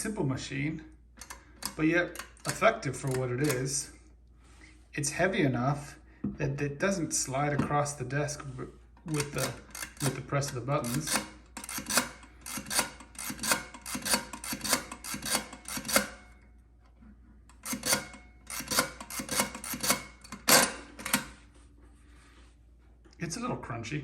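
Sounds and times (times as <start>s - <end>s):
adding machine keys clicking: 1.2s - 3.7s, 9.0s - 16.2s, 17.5s - 21.3s.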